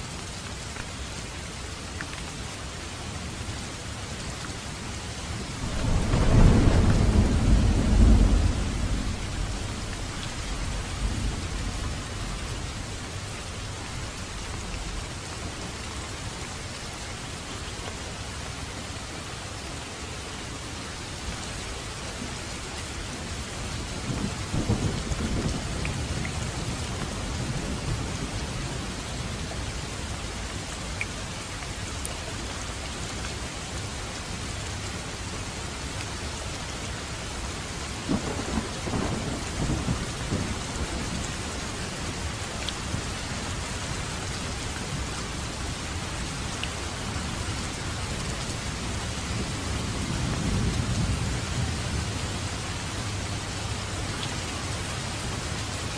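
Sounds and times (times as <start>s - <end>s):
heavy rain falling: 0.0s - 55.9s
thunder rumbling: 5.6s - 12.7s, 38.1s - 45.5s, 48.5s - 52.4s.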